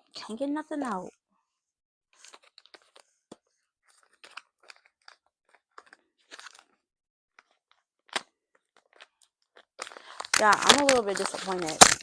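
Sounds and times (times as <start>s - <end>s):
packaging crinkling and scratching: 2.2s - 6.8s, 7.4s - 12.0s.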